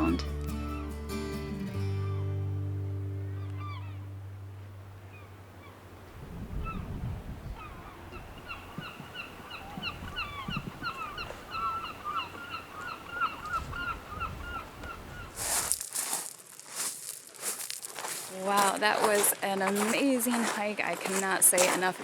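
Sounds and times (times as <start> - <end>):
geese honking: 3.1 - 5.9, 7.6 - 15.4.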